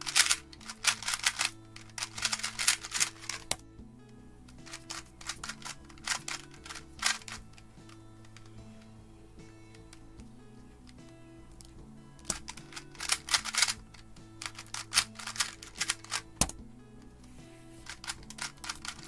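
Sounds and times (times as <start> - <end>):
plastic puzzle cube clacking: 0.0 - 3.6, 4.6 - 8.9, 11.6 - 16.6, 17.8 - 19.0
soft background music: 0.0 - 19.0.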